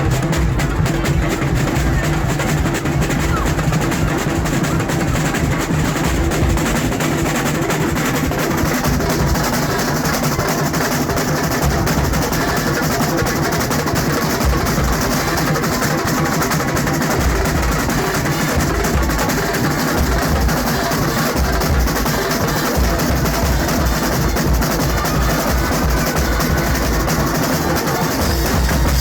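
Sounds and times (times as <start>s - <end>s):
parade music: 0.0s - 29.0s
steady drumming: 0.0s - 29.0s.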